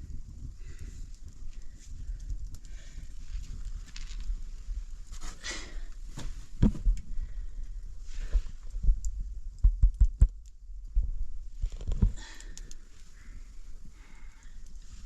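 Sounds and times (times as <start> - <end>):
dull thumps and knocks: 6.2 - 7.0.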